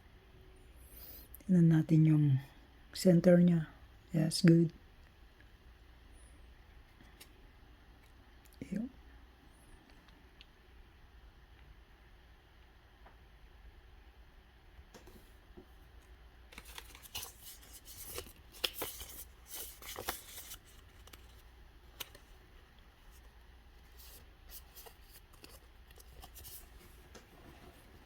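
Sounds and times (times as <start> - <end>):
cards rustling and sliding: 16.5 - 22.4, 23.0 - 27.1.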